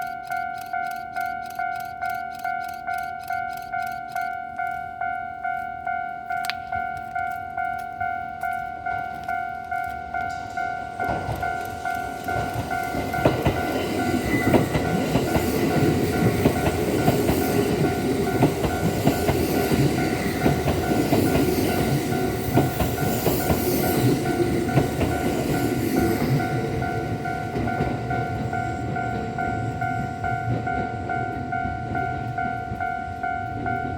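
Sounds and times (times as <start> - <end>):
crossing warning bell ringing: 0.0 - 33.9
electric train running past: 0.0 - 33.9
wheels clacking over rail joints: 10.2 - 32.8.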